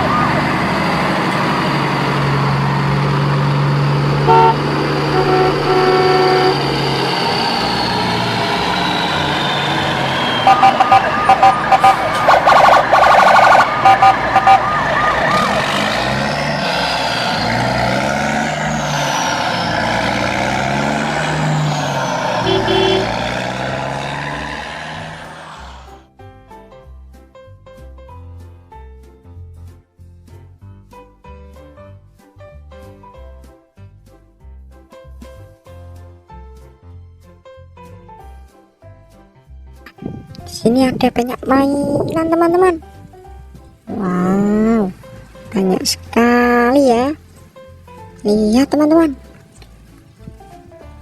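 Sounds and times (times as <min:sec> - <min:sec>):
horn toots: 0:04.2 - 0:25.9
siren tones falling: 0:04.3 - 0:17.8
rapid beeps: 0:10.4 - 0:12.8.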